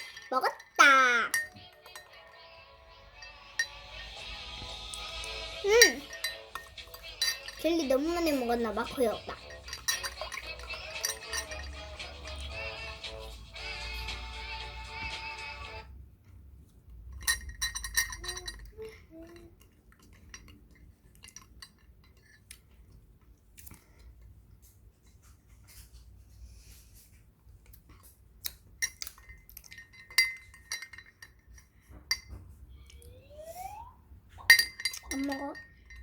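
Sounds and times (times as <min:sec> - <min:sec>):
objects clinking against glassware: 0:00.0 - 0:02.5, 0:03.1 - 0:13.0, 0:17.2 - 0:22.5, 0:28.8 - 0:32.4, 0:34.4 - 0:36.0.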